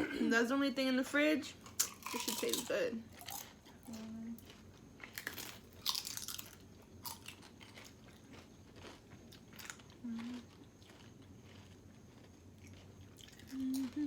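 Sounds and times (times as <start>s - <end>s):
chewing crunchy food: 1.6s - 14.0s
low hummed tone: 9.8s - 11.0s, 13.2s - 14.0s.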